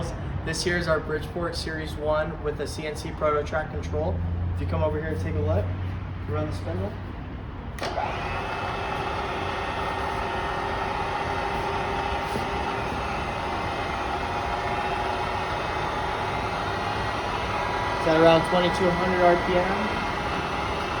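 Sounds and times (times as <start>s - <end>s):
milling machine spindle whirring: 7.8s - 21.0s.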